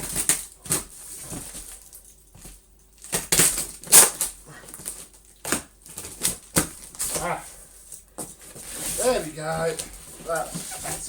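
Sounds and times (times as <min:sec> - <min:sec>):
cardboard boxes being crushed: 0:00.0 - 0:07.4.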